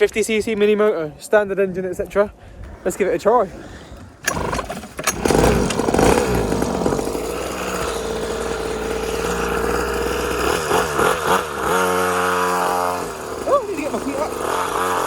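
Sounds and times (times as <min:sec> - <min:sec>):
two-stroke engine idling and revving: 0:04.3 - 0:15.0.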